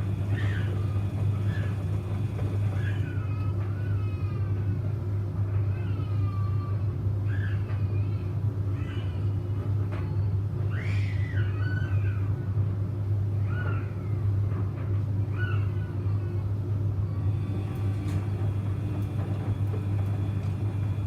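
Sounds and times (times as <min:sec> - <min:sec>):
washing machine humming: 0:00.0 - 0:21.0.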